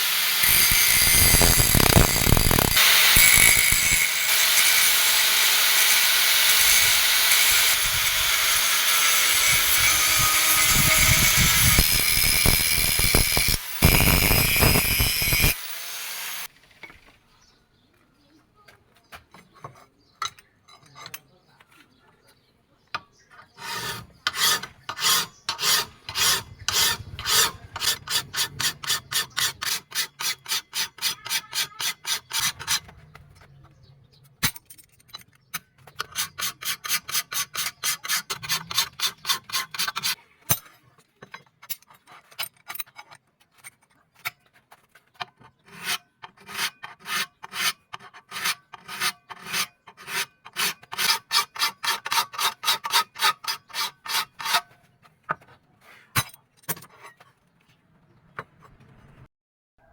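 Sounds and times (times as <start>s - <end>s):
hand file rasping on steel: 0.0s - 16.5s, 23.4s - 32.9s, 36.0s - 40.2s, 45.6s - 54.7s.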